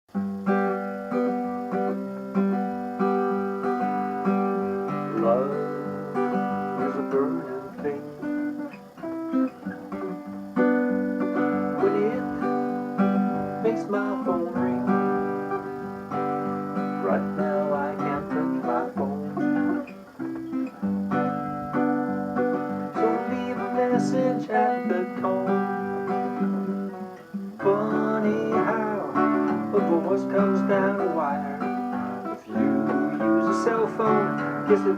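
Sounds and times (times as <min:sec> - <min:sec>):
guitar ringtone tune: 0:00.1 - 0:34.9.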